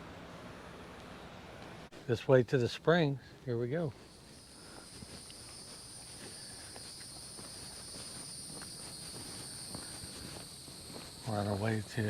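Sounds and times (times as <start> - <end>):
faint footsteps on trail: 1.0 - 12.0
insects buzzing: 2.6 - 12.0.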